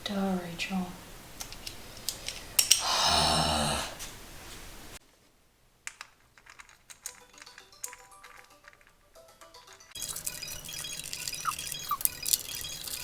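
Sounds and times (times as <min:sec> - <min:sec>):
metal clicks of hand tools: 0:01.4 - 0:02.9.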